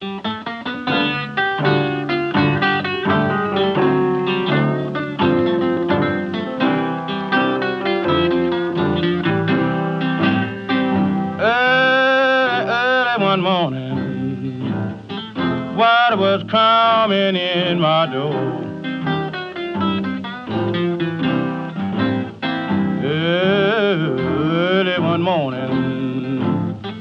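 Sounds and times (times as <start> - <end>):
finger-picked acoustic blues guitar: 0.0 - 27.0
man singing: 7.6 - 19.4, 22.8 - 27.0.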